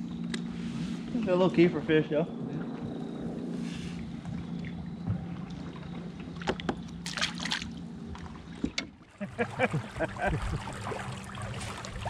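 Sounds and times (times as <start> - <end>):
steady low hum: 0.0 - 12.0
splashy knocks: 9.7 - 12.0.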